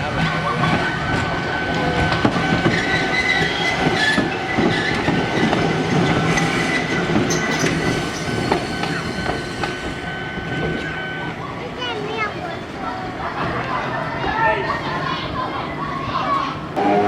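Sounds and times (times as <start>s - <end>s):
train clicks: 0.0s - 11.1s
train high whine: 0.0s - 17.0s
train low rumble: 0.0s - 17.0s.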